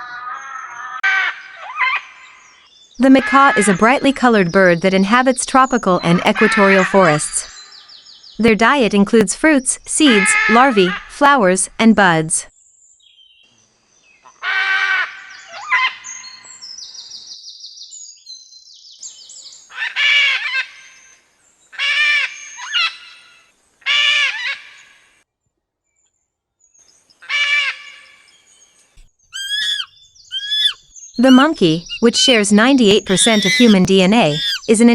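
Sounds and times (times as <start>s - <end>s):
macaw squawking: 29.4s - 34.9s
soft rattling chatter: 29.4s - 34.9s.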